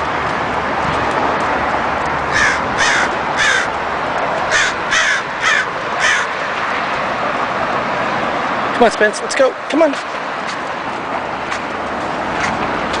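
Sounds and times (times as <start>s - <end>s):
highway traffic hiss: 0.0s - 13.0s
bird giving harsh calls: 2.3s - 3.7s, 4.5s - 6.3s.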